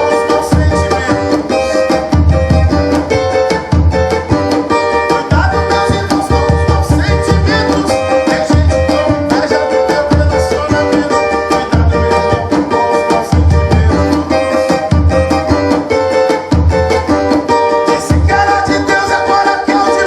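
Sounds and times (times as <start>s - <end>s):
cavaquinho strummed fast: 0.0s - 20.0s.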